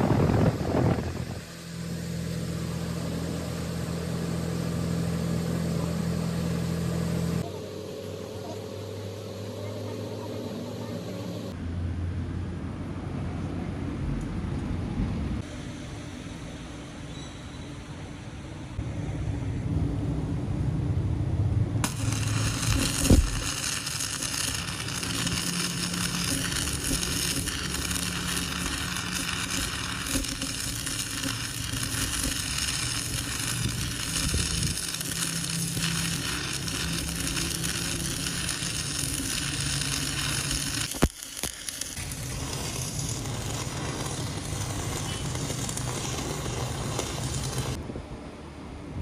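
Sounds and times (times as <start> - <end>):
arc welding crackling sizzle: 0.0 - 11.6, 21.8 - 47.8.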